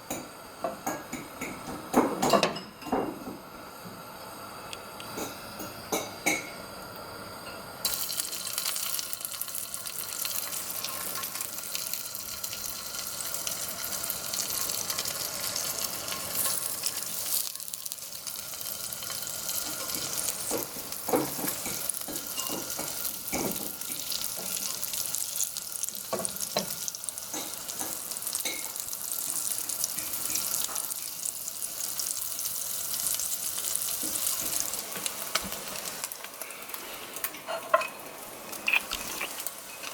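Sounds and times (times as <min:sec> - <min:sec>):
oil crackling and popping: 0:07.8 - 0:36.4, 0:37.7 - 0:39.9
fish fillets sizzling in oil: 0:07.8 - 0:39.9.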